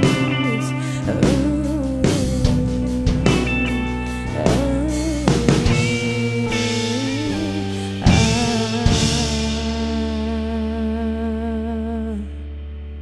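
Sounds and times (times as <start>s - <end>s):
held guitar chords: 0.0s - 13.0s
drum hits: 1.2s - 10.3s.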